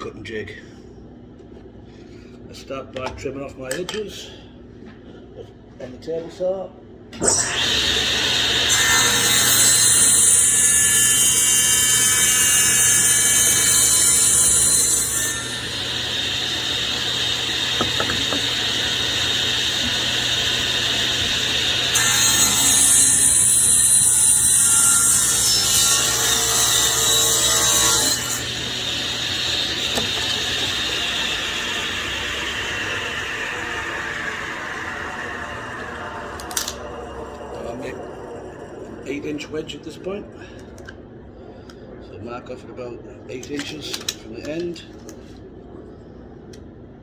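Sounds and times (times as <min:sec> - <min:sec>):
table saw running: 0:07.2 - 0:39.4.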